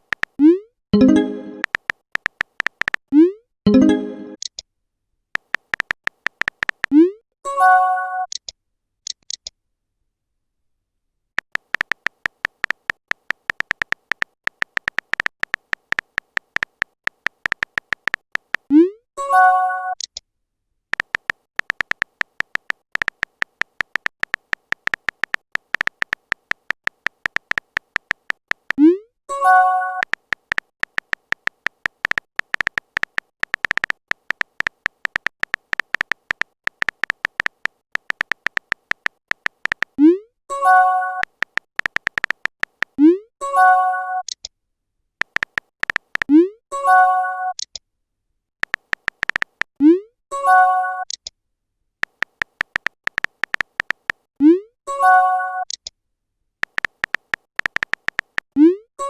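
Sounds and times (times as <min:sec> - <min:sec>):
phone keyboard typing clicks: 0:00.0 - 0:04.6, 0:05.4 - 0:07.1, 0:11.4 - 0:18.8, 0:20.9 - 0:40.1, 0:40.7 - 0:43.0, 0:45.2 - 0:46.4, 0:48.6 - 0:49.7, 0:52.0 - 0:54.3, 0:56.6 - 0:58.6
message sent chime: 0:01.0 - 0:01.7, 0:03.7 - 0:04.4.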